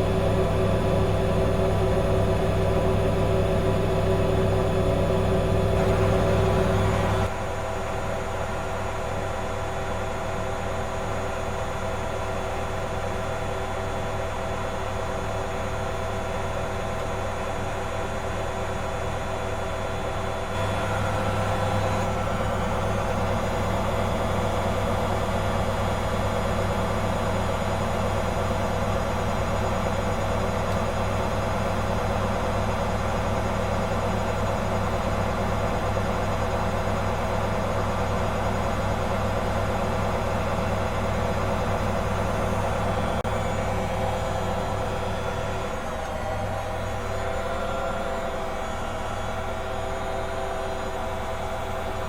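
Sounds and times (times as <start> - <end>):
washing machine spinning: 0.0 - 52.0.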